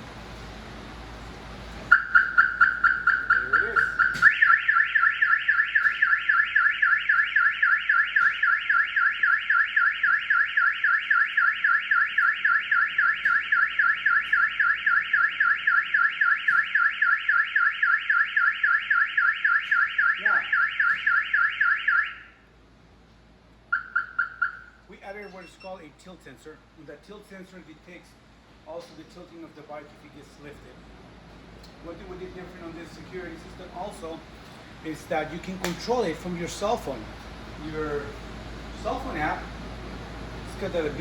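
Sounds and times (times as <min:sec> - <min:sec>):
motorcycle alarm siren warbling: 0:01.9 - 0:22.5, 0:23.7 - 0:25.6.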